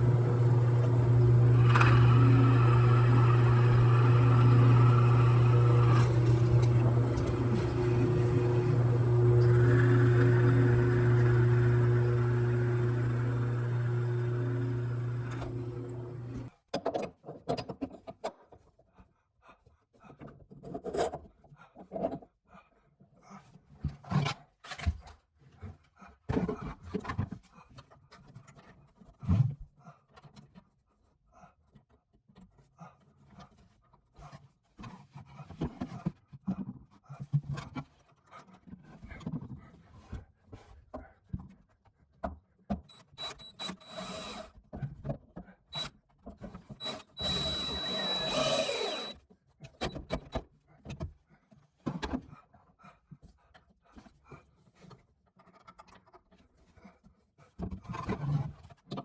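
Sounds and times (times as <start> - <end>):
power drill running: 0.0 - 16.5, 42.9 - 44.5, 46.7 - 49.2.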